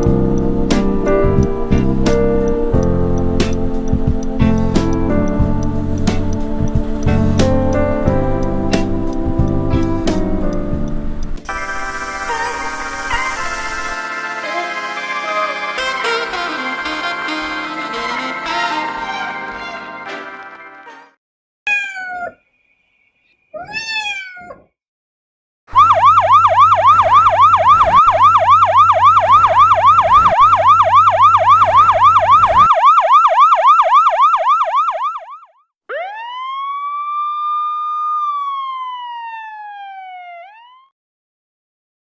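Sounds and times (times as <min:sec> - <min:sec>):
siren whooping and wailing: 0:11.5 - 0:19.6, 0:25.7 - 0:40.9.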